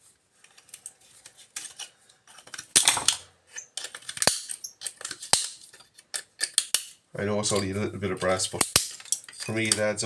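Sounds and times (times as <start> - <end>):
scrap metal clinking: 8.8 - 9.8.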